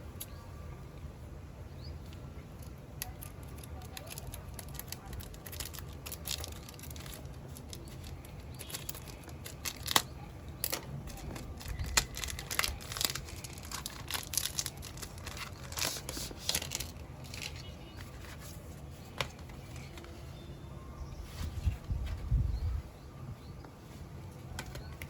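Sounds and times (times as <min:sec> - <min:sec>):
packaging crinkling and tearing: 0:03.0 - 0:20.1.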